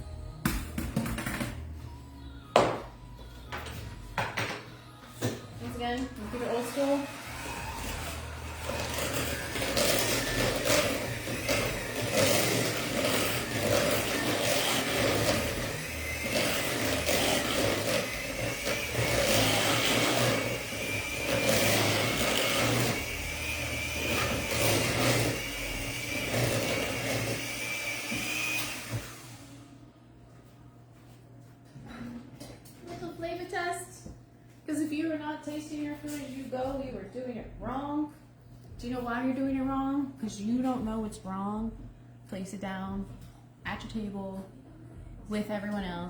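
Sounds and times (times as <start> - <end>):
beaters churning through mash: 5.7 - 29.6
electric hand mixer whining: 5.8 - 29.8.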